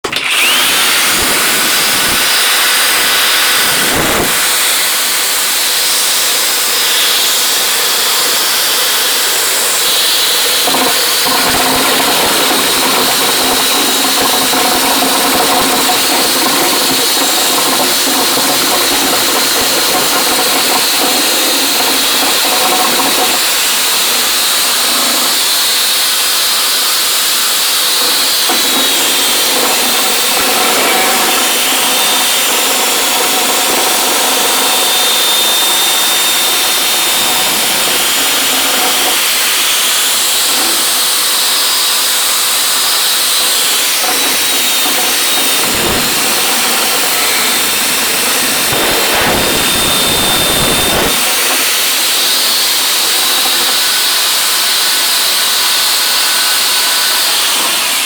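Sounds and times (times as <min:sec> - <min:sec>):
power drill motor whine: 0:00.0 - 0:58.0
brush scrubbing inside pipe: 0:10.6 - 0:23.9.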